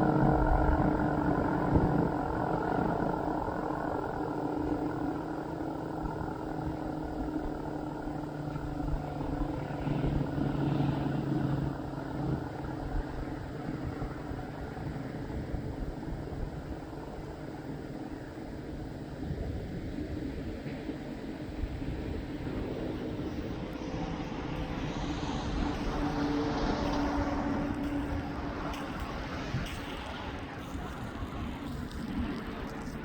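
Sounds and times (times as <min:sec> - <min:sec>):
tornado siren low steady tones: 0:00.0 - 0:33.0.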